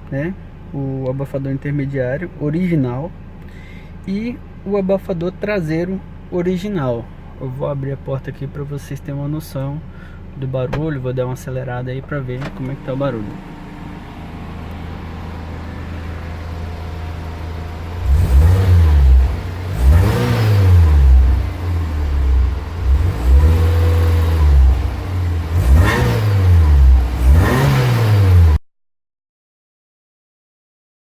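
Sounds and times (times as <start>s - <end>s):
car exhaust idling and revving: 12.1s - 28.6s.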